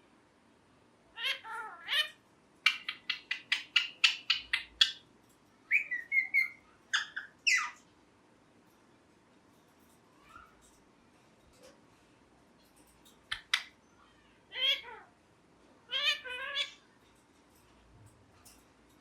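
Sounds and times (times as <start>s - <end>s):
parrot calling and chirping: 1.2s - 5.1s, 5.7s - 7.8s, 13.3s - 13.8s, 14.5s - 15.1s, 15.9s - 16.9s.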